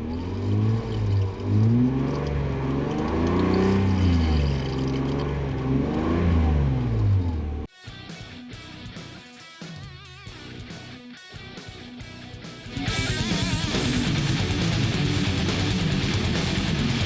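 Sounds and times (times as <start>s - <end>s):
car engine revving: 0.0s - 7.7s, 12.8s - 17.0s.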